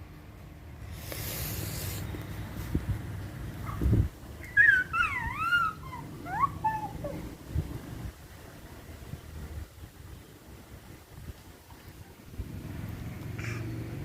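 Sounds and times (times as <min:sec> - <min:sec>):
baby squealing: 0:04.4 - 0:07.4.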